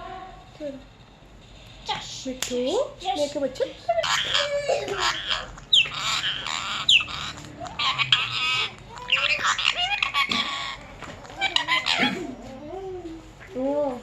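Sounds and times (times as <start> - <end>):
parrot squawking and chattering: 3.8 - 12.6.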